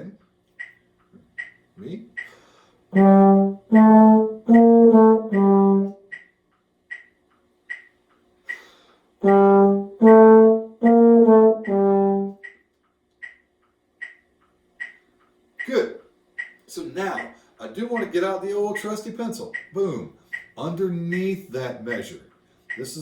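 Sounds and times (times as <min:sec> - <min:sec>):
metronome clicking: 0:00.5 - 0:15.8, 0:16.4 - 0:23.0
trombone phrase: 0:02.9 - 0:06.0, 0:09.2 - 0:12.4.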